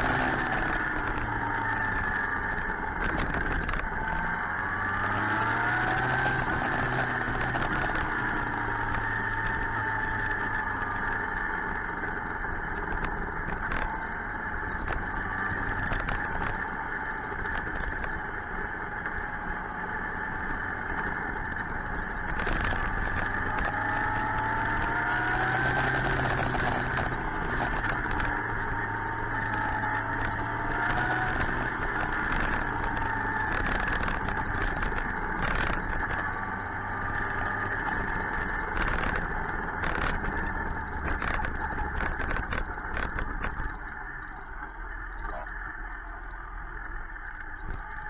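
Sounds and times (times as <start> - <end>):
motorcycle engine running: 0.0 - 48.0
wind and road noise: 0.0 - 48.0.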